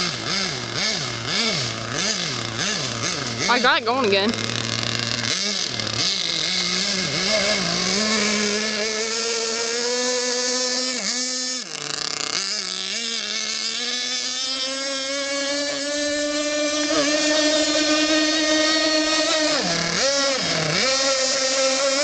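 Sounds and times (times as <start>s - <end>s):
model boat engine running: 0.0s - 22.0s.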